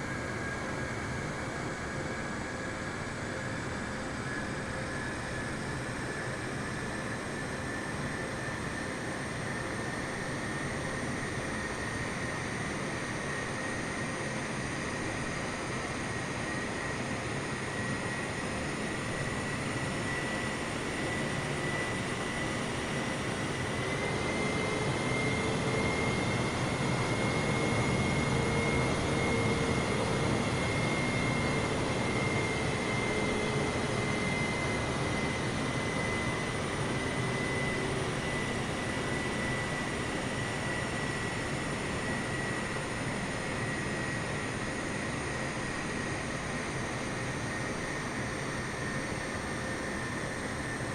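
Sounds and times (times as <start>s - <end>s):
jet engines whining: 16.5s - 50.9s.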